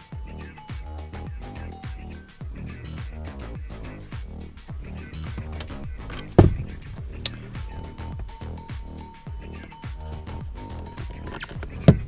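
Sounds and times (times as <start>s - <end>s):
music with steady beat and bass: 0.0s - 12.0s
loud knock: 6.3s - 6.9s.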